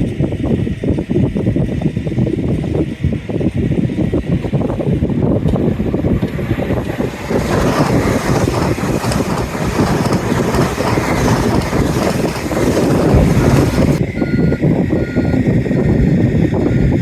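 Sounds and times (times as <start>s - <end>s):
wind buffeting microphone: 0.0s - 17.0s
train passing at speed: 5.6s - 14.0s.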